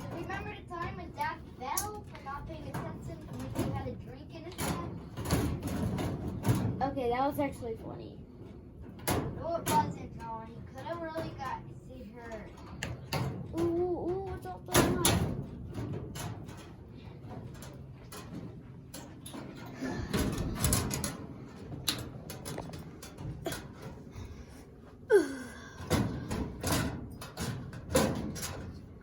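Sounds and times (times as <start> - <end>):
objects knocking and clattering: 0.0 - 6.9, 12.3 - 24.8, 25.7 - 29.0.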